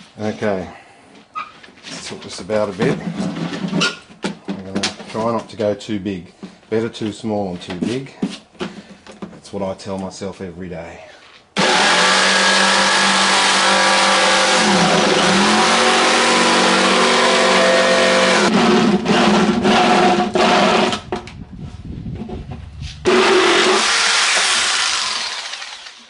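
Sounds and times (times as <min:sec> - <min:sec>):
power tool cutting plastic: 0:11.6 - 0:21.1, 0:23.1 - 0:26.0.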